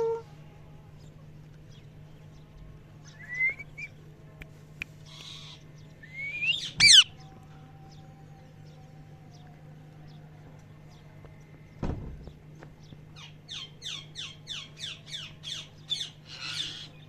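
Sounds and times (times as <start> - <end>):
parrot whistling: 6.1 - 7.1
parrot harsh call: 6.4 - 7.1.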